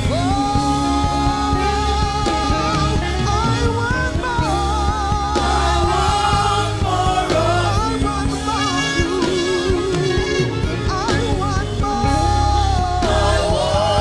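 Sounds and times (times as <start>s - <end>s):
gospel band playing: 0.0s - 14.0s
steady bass: 0.0s - 14.0s.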